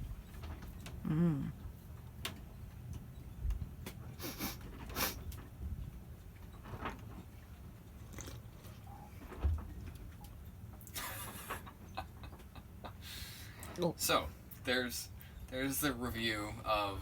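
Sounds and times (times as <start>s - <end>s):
person chewing and smacking: 8.0s - 8.9s.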